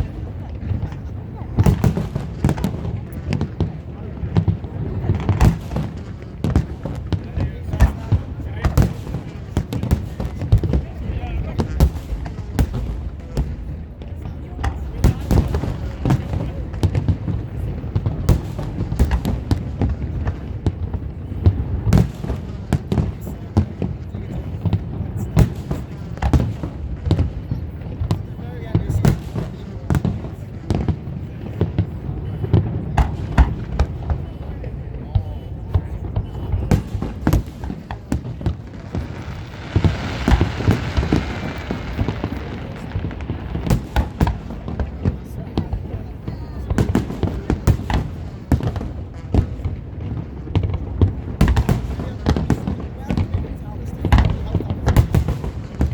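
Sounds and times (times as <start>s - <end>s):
firework cracks and bangs: 0.0s - 55.9s
low rumble of firework booms: 0.0s - 55.9s.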